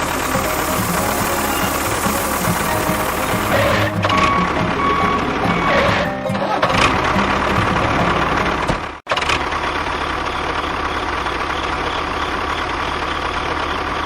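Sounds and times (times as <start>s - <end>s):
engine idling: 0.0s - 5.8s, 6.7s - 14.0s.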